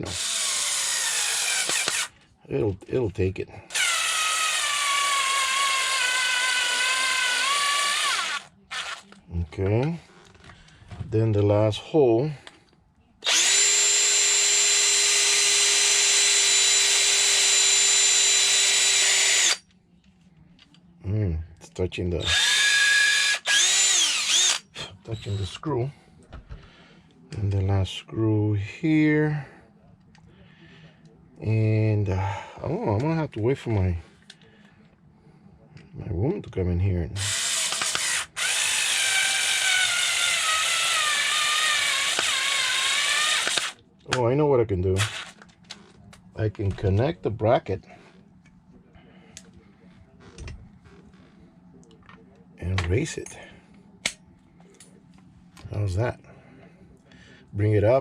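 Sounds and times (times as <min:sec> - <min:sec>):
cordless drill boring into wood: 0:00.0 - 0:02.1, 0:03.7 - 0:09.1, 0:13.2 - 0:19.6, 0:22.2 - 0:24.6, 0:37.2 - 0:43.8, 0:45.0 - 0:45.4.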